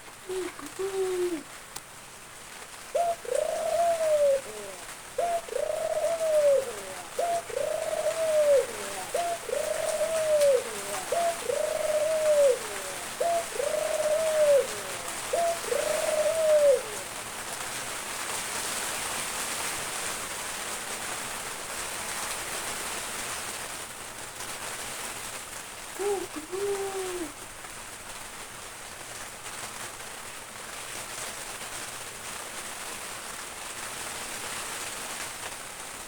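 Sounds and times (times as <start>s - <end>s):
dove cooing: 0.0s - 1.6s, 2.9s - 17.2s, 26.0s - 27.4s
rain hissing: 0.0s - 36.0s.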